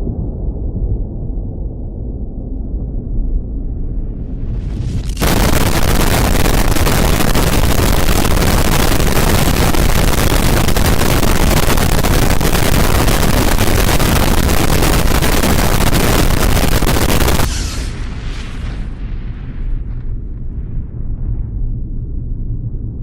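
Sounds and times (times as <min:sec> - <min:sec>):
loud steady rushing noise: 0:05.0 - 0:19.0.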